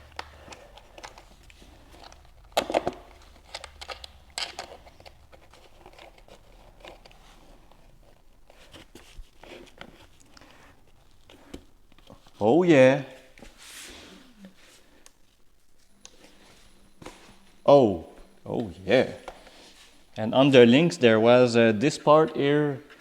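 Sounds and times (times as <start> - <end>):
plastic crinkling and rubbing: 0.0 - 12.5.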